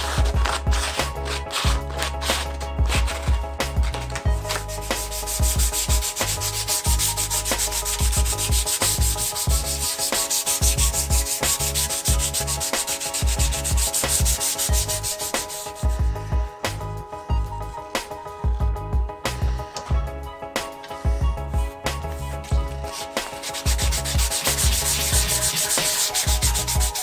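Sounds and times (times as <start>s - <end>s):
background music: 0.0s - 27.0s
scratchy sanding hiss: 4.5s - 16.0s, 23.0s - 27.0s.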